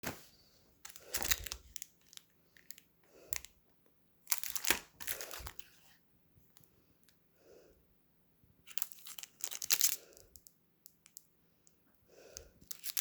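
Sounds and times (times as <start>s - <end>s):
wrapper crinkling: 0.9s - 2.8s, 4.3s - 5.8s, 8.7s - 10.4s, 12.6s - 13.0s
chocolate bar crunching: 8.7s - 10.4s, 12.6s - 13.0s.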